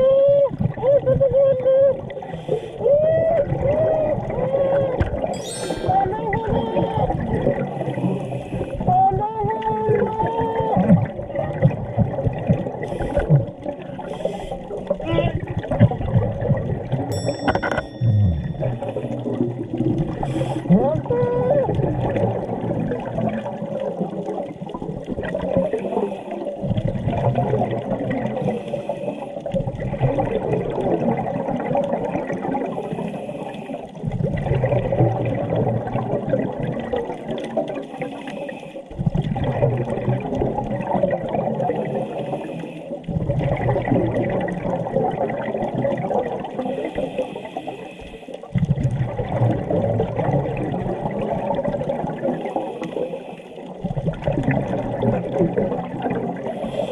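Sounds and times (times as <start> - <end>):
diver exhaling gurgling bubbles: 3.4 - 8.9, 10.7 - 17.1, 18.0 - 38.2, 38.9 - 47.8, 48.5 - 53.2, 53.8 - 56.9
diver inhaling through regulator: 20.1 - 20.7, 28.4 - 29.5, 32.7 - 33.8, 41.9 - 43.0, 46.7 - 48.4, 56.4 - 56.9.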